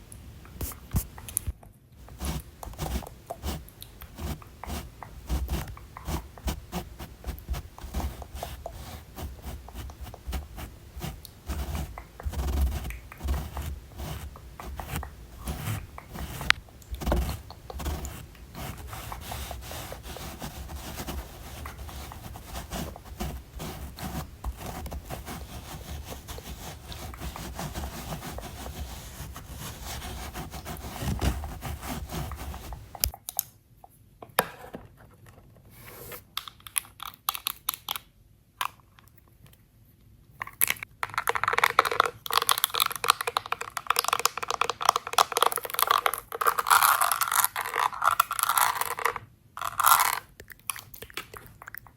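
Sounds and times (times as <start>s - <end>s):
rubbing on cosmetics: 2.0s - 33.1s.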